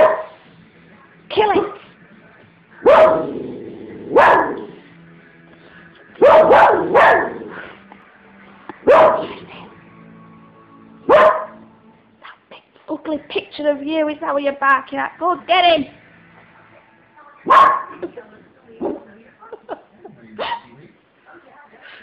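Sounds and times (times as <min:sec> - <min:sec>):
dog barking: 0:00.0 - 0:00.4, 0:02.8 - 0:03.4, 0:04.1 - 0:04.7, 0:06.2 - 0:07.6, 0:08.8 - 0:09.4, 0:11.1 - 0:11.6, 0:17.5 - 0:18.0.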